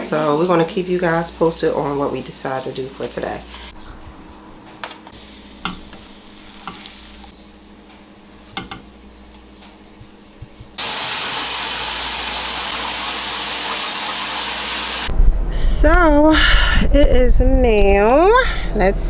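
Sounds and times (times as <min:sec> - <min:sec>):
food sizzling in a pan: 0:05.2 - 0:07.3, 0:10.8 - 0:15.1.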